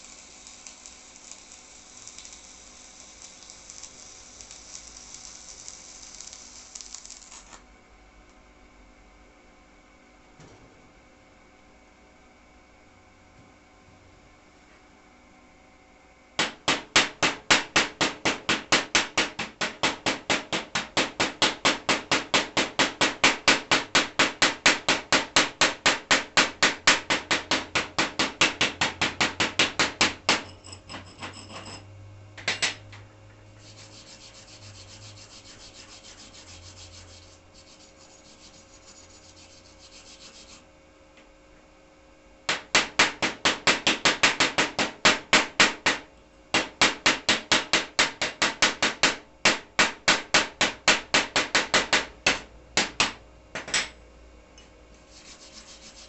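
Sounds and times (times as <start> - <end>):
scraping strokes on steel: 33.5 - 40.6, 55.0 - 56.0.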